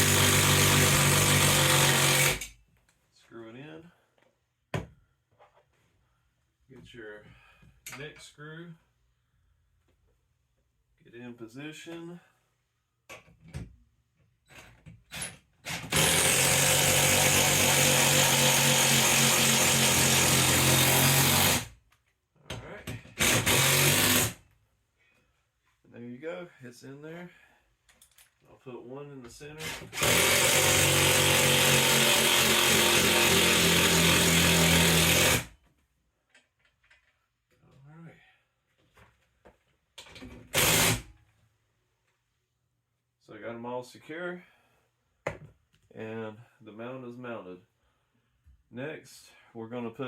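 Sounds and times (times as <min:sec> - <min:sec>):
power drill driving screw: 0:00.0 - 0:02.6, 0:15.1 - 0:21.7, 0:23.1 - 0:24.4, 0:29.6 - 0:35.6, 0:40.5 - 0:41.1.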